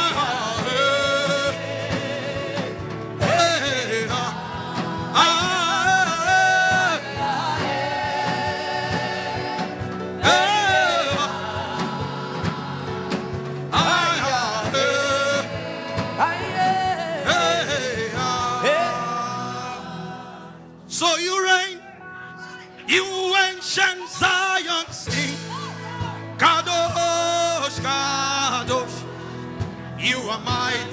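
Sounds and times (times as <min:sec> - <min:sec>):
steady drum beat: 0:00.0 - 0:20.0.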